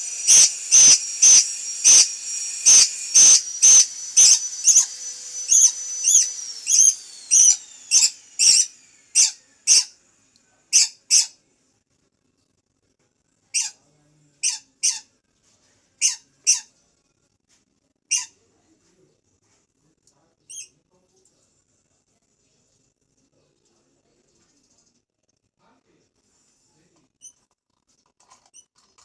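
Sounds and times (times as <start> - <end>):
parrot squeaky calls: 0.1 - 9.9, 10.7 - 11.4, 13.5 - 13.8, 14.4 - 15.1, 16.0 - 16.7, 18.1 - 18.4.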